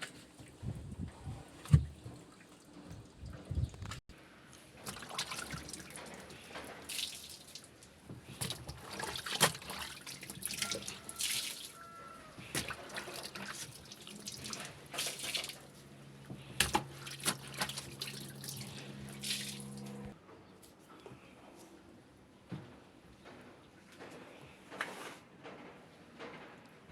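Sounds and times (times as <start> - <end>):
water splashing and dripping: 4.8 - 11.8, 12.4 - 15.8, 16.6 - 20.0
low steady hum: 12.7 - 20.2.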